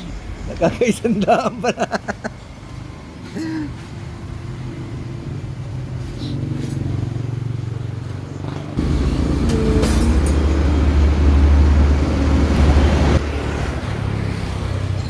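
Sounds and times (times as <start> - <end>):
motorcycle engine running: 7.1 - 14.8.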